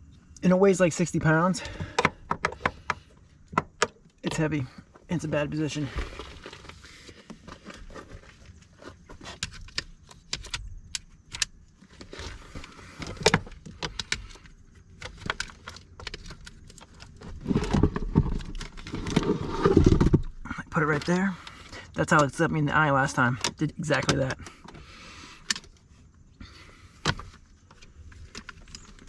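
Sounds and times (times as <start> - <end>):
thumps and scraping: 0.8 - 29.0.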